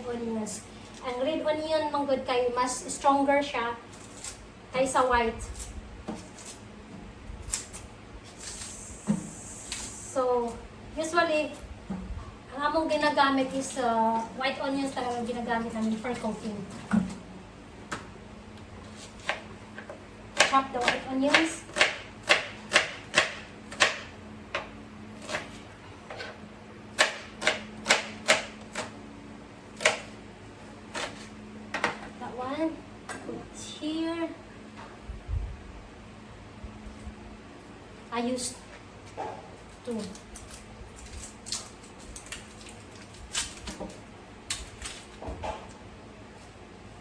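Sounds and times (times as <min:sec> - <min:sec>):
knife chopping on cutting board: 0:19.0 - 0:26.3, 0:27.0 - 0:28.9.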